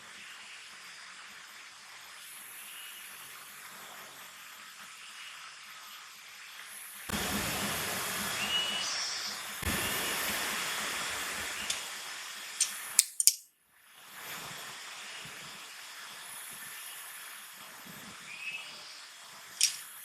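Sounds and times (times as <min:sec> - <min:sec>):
steady hiss: 0:00.0 - 0:20.0
sharp clicks: 0:12.6 - 0:13.4, 0:19.6 - 0:19.8.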